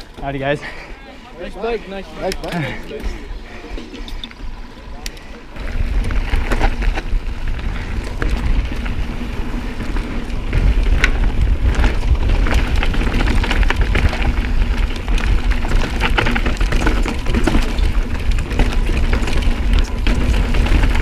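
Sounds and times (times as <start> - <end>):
bike clicks and rattles: 0.0 - 21.0
tyres crackling over dirt: 0.0 - 21.0
wind rumble on microphone: 5.6 - 21.0.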